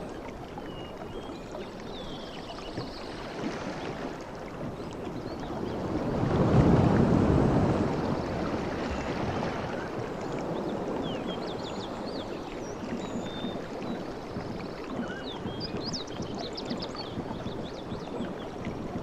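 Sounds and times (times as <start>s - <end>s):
sea waves washing: 3.3s - 19.0s
small birds chirping: 9.7s - 18.7s.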